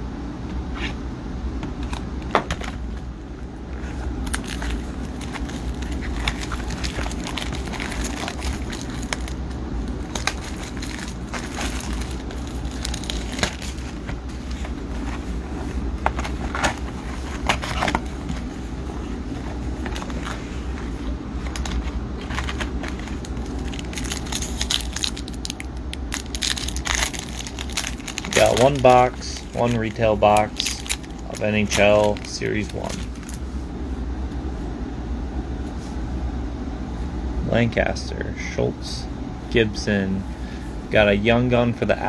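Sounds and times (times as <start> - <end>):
steady low hum: 0.0 - 42.0
packaging crinkling and crackling: 3.8 - 33.5.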